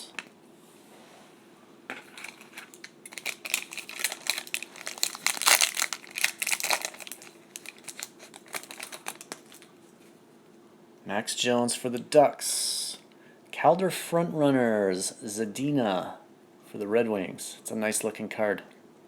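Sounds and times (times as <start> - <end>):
card pack wrapper crinkling: 1.9 - 9.7.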